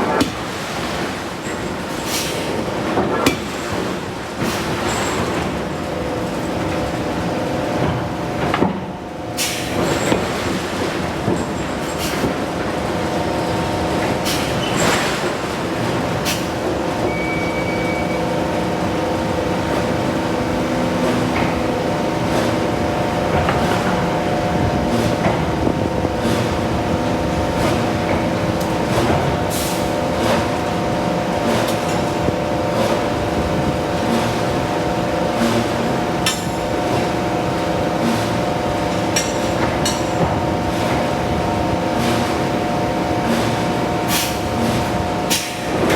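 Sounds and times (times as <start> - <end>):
machinery humming: 10.3 - 45.9.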